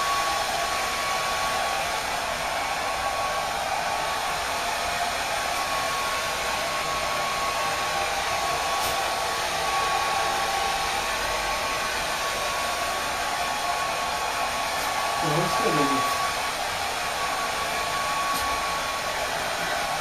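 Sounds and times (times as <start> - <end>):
hair dryer blowing: 0.0 - 20.0.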